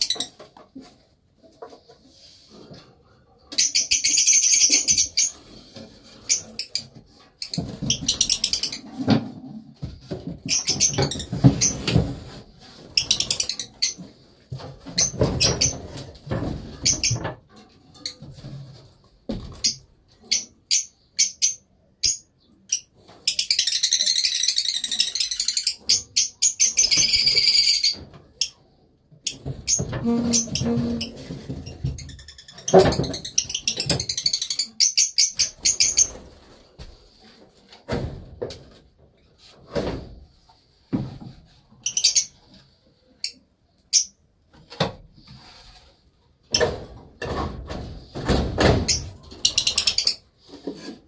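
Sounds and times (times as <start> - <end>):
rustling in cage: 29.3 - 34.4.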